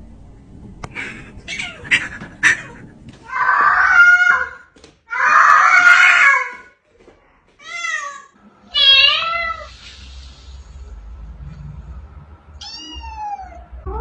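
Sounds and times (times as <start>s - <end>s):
cat meowing: 1.5s - 6.6s, 7.6s - 9.7s, 12.6s - 14.0s
harsh cat cry: 1.5s - 6.7s, 7.6s - 9.7s.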